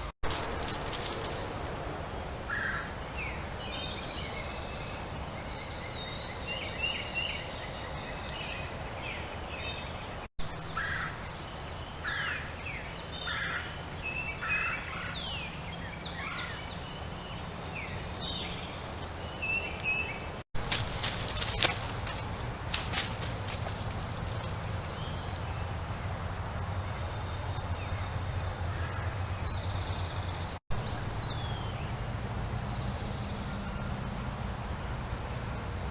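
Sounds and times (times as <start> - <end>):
low steady hum: 0.0 - 12.0
birds chirping and singing: 0.0 - 34.0
sharp clicks or rustles: 20.6 - 24.6.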